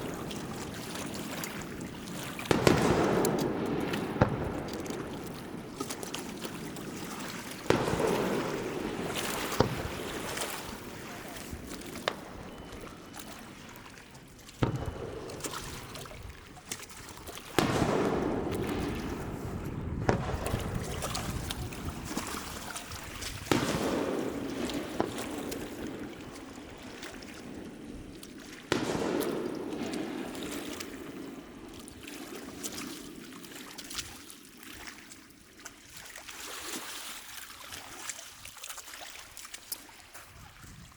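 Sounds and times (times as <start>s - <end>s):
rolling echo: 0.0s - 32.6s
firework shells booming: 2.5s - 13.6s, 14.6s - 16.8s, 17.5s - 26.7s, 28.7s - 31.7s.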